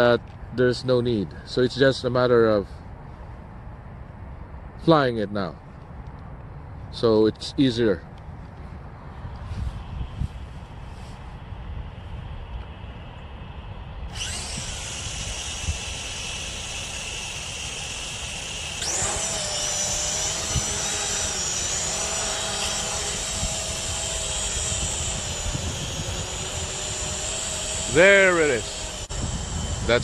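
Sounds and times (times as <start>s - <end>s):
drone motors whining: 12.6s - 30.0s.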